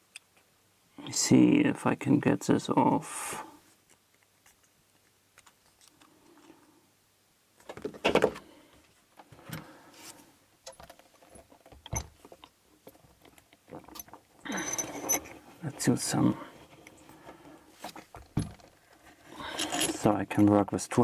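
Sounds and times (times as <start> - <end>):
metal lock and tools rattling: 13.2 - 15.4, 19.4 - 20.1.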